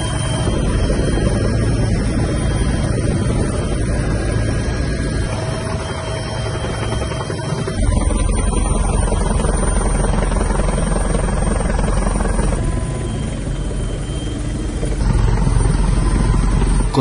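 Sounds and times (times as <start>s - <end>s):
helicopter rotor and engine: 0.0s - 17.0s.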